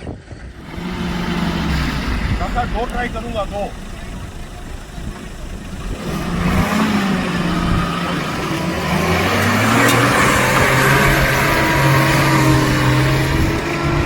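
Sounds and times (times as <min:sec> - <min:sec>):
car engine revving: 0:00.4 - 0:14.0.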